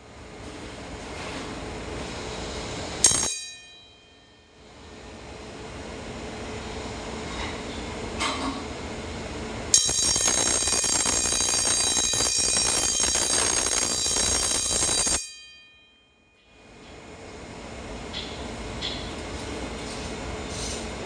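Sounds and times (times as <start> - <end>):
fire alarm bell ringing: 3.0 - 4.6, 9.7 - 16.8.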